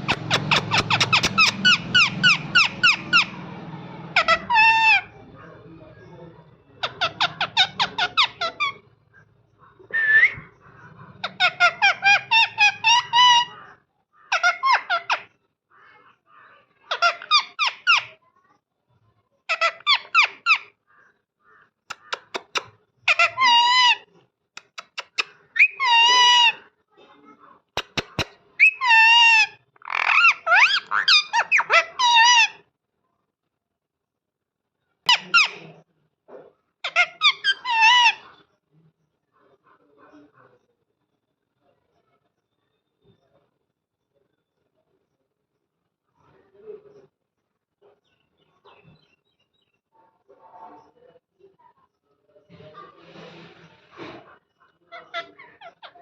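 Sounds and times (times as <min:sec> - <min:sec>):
parrot chirping: 0:00.0 - 0:03.4, 0:04.1 - 0:05.2, 0:06.8 - 0:08.9, 0:09.8 - 0:13.6, 0:16.9 - 0:18.2, 0:21.9 - 0:26.6, 0:27.8 - 0:32.6, 0:35.1 - 0:35.7, 0:36.8 - 0:38.4, 0:54.9 - 0:56.0.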